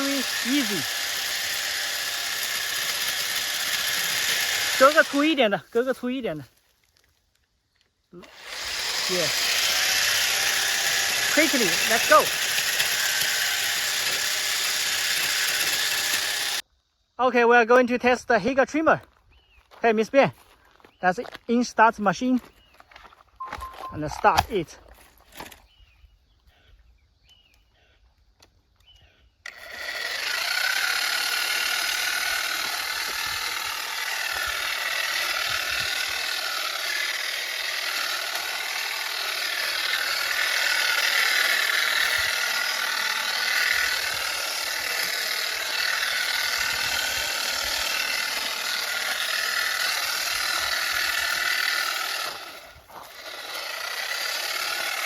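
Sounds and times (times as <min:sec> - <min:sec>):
hedge trimmer whirring: 0:00.0 - 0:06.5, 0:08.1 - 0:16.6, 0:23.4 - 0:24.7, 0:28.8 - 0:55.0.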